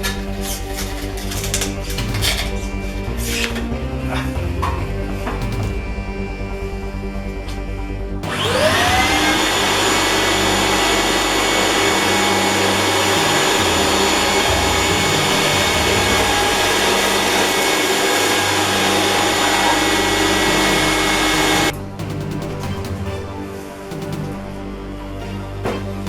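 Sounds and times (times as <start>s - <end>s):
small electric motor whining: 7.3s - 21.7s.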